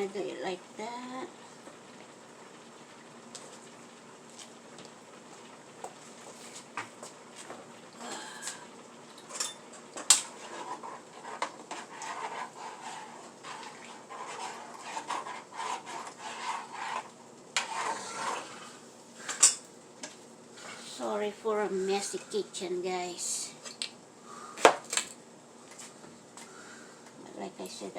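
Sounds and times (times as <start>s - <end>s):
dishes and utensils clattering: 9.2s - 10.2s.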